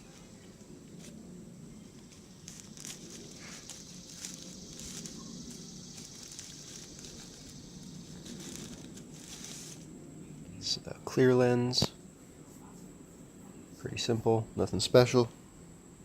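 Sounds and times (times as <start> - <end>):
plastic packaging rustling: 2.0 - 9.9.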